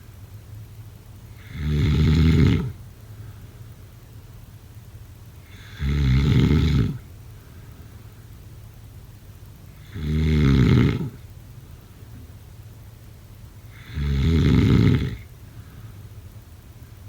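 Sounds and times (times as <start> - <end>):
person snoring: 1.4 - 2.7, 9.8 - 11.2, 13.7 - 15.2.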